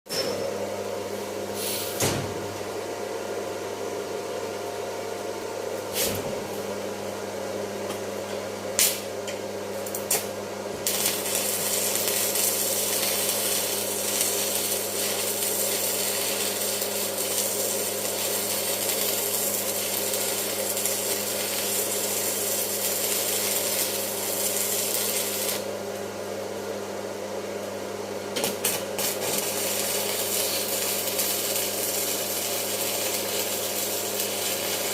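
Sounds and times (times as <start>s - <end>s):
electrical hum: 0.1s - 34.9s
arc welding crackling hiss: 9.8s - 25.7s, 28.4s - 34.9s.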